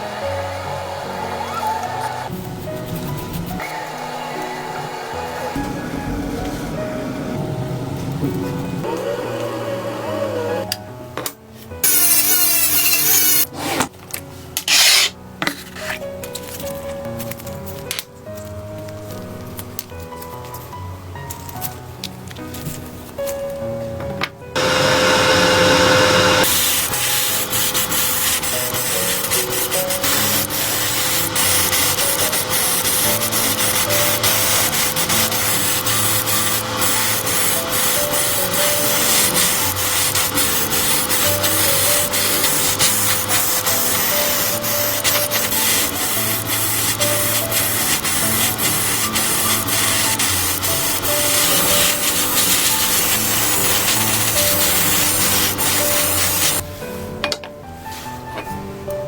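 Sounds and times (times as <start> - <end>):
background music: 0.0 - 59.0
abrasive sanding: 24.6 - 56.6.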